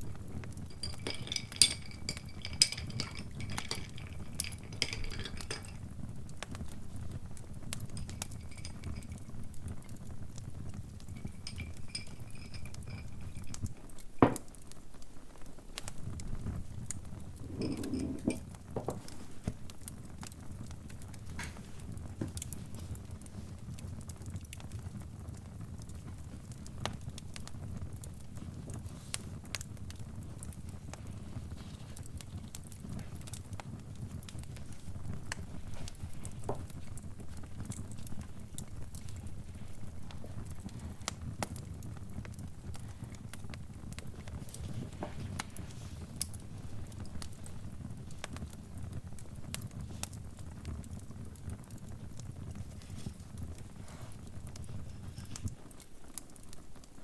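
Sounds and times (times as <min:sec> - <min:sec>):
fire crackling: 0:00.0 - 0:57.0
low rumble of fire: 0:00.0 - 0:57.0
light ringing clinks: 0:00.6 - 0:05.9, 0:07.9 - 0:09.9, 0:11.0 - 0:14.5, 0:17.4 - 0:18.5.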